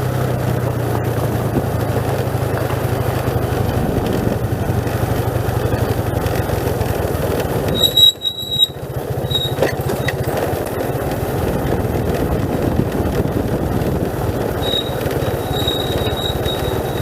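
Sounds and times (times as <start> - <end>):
motorcycle engine running: 0.0 - 17.0
high-pitched brake squeal: 7.7 - 10.4, 14.5 - 17.0.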